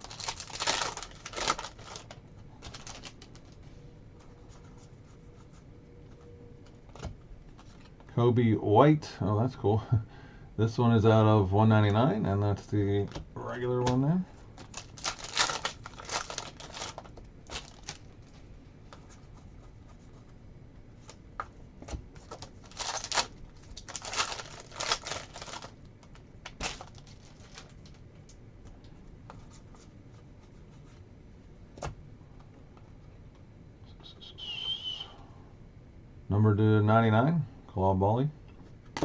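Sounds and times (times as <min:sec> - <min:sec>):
wrapper crinkling: 0:00.0 - 0:03.6, 0:14.6 - 0:18.3, 0:22.2 - 0:28.0.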